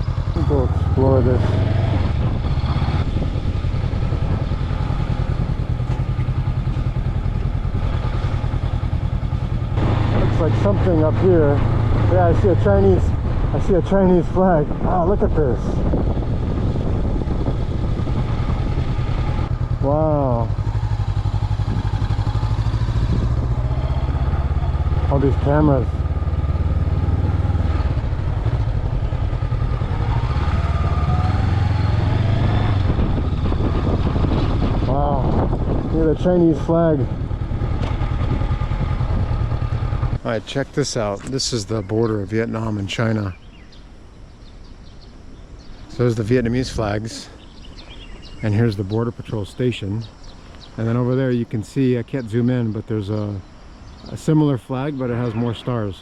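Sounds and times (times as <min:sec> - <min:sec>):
motorcycle engine running: 0:00.0 - 0:49.2.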